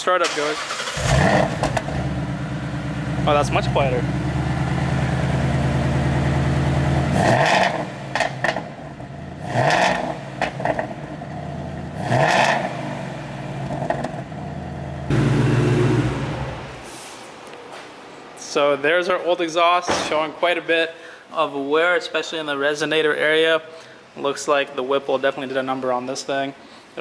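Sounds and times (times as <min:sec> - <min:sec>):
car engine idling and revving: 0:00.8 - 0:16.8.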